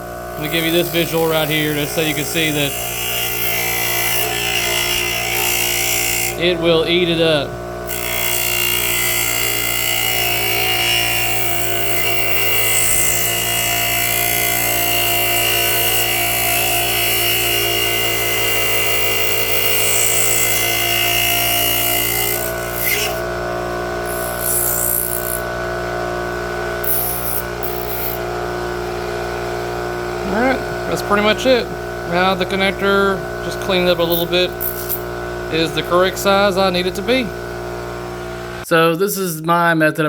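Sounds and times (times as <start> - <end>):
grinding plastic hiss: 0.0 - 14.4, 30.2 - 37.8
electric grinder motor whine: 0.0 - 38.7.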